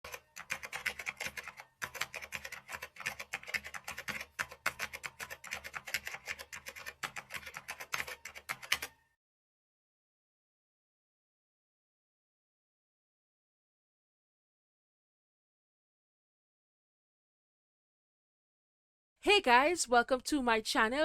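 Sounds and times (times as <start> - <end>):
rapid typing on keyboard: 0.0 - 9.0.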